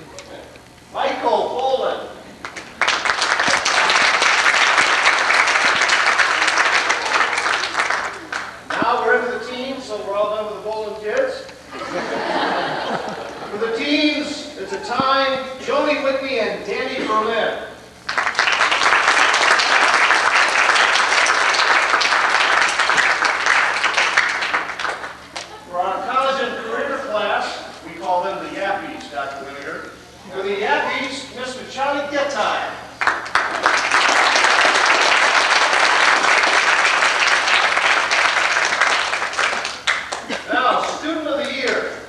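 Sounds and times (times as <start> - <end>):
audience applauding: 2.4 - 8.8, 18.1 - 25.5, 33.0 - 40.4.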